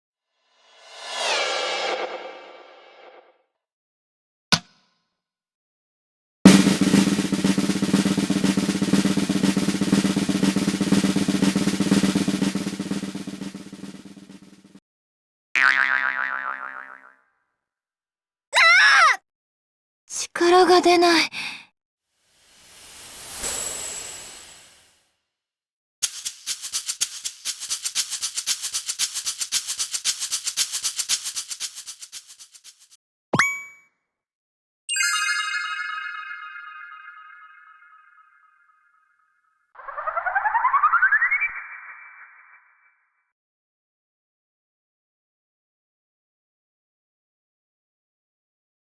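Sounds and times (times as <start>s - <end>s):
rapid drum roll: 6.5s - 14.8s, 26.0s - 33.0s.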